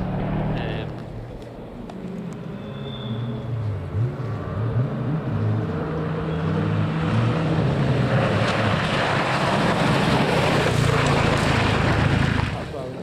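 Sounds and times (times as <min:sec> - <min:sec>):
tyres on gravel: 0:07.7 - 0:13.0.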